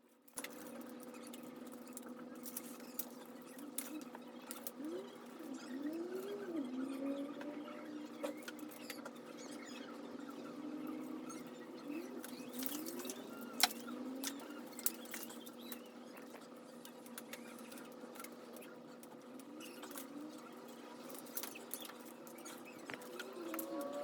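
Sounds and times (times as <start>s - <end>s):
wires and plastic plugs clicking: 12.2s - 15.9s.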